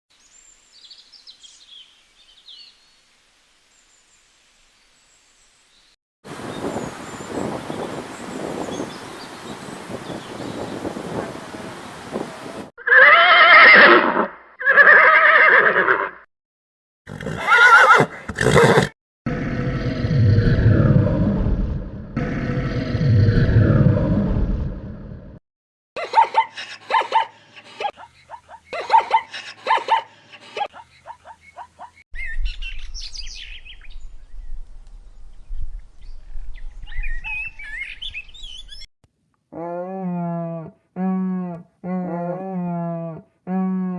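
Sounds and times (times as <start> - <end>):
birds chirping: 6.3 - 12.6, 35.5 - 38.9
horse whinnying: 12.8 - 16.2, 17.1 - 18.9
low rumble: 19.3 - 25.4.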